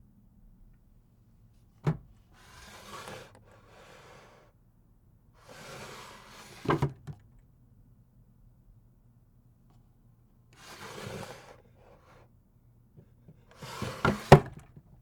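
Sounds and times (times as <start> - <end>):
drawer shutting with knocks: 1.8 - 2.1, 13.7 - 14.6
wooden drawer sliding: 2.4 - 4.4, 10.6 - 11.6, 13.5 - 14.6.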